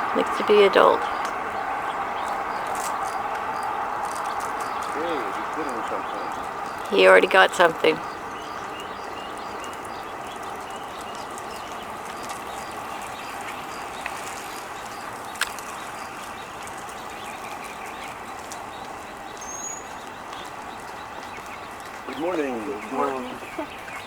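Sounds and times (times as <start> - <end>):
outdoor background noise: 0.0 - 24.0
small bird chirps: 8.0 - 24.0.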